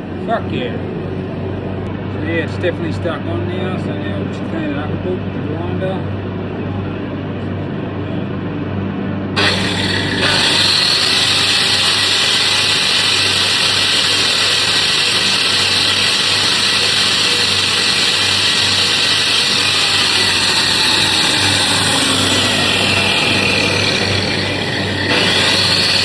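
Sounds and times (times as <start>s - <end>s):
angle grinder grinding steel: 9.4s - 26.0s.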